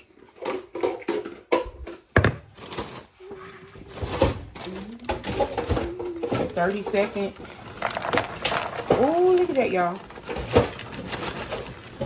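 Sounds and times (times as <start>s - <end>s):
kitchen handling knocks and clicks: 0.4s - 3.0s, 3.9s - 7.3s.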